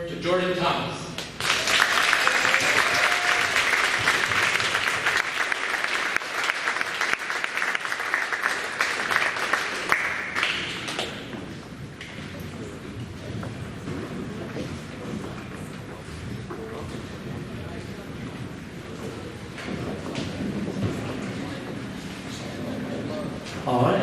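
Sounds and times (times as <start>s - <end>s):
audience clapping: 1.2s - 11.5s.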